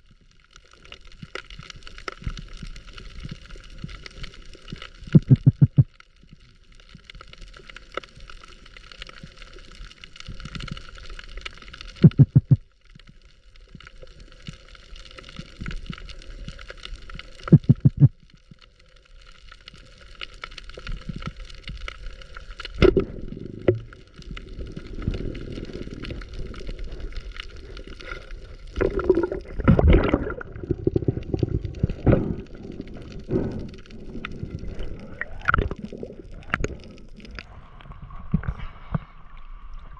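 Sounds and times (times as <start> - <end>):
water hissing and gurgling: 0.0 - 39.9
water sloshing: 28.8 - 32.4.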